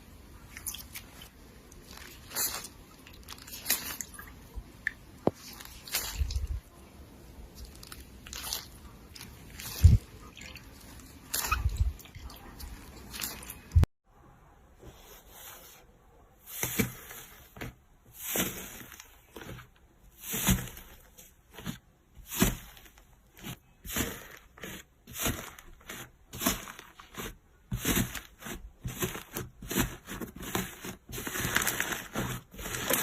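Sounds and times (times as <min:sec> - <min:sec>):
slime squeezed by hand: 0:07.6 - 0:12.3.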